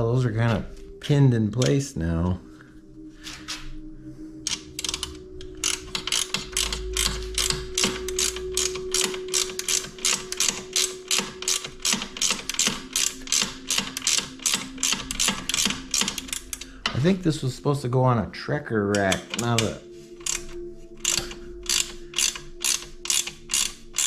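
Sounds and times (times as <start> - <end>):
hand ratchet clicking: 4.5 - 17.1, 18.9 - 24.0.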